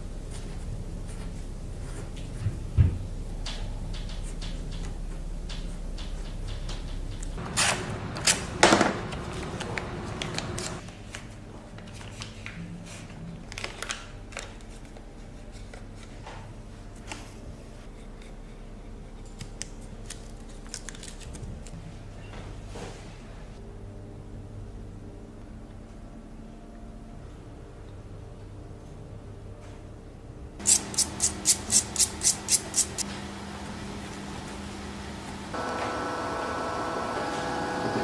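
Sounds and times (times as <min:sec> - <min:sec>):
steady low hum: 0:00.0 - 0:10.9, 0:23.1 - 0:38.0.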